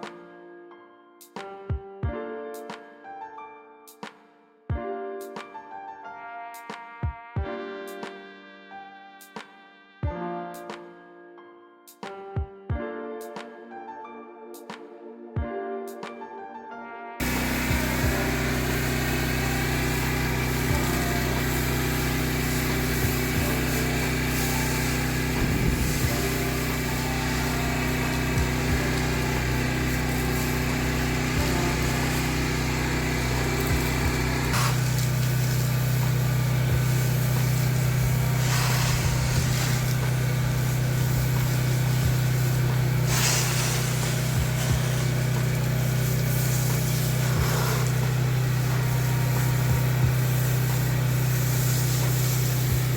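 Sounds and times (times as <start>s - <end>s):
pressure washer engine running: 17.2s - 52.9s
short bursts of hiss: 17.2s - 52.9s.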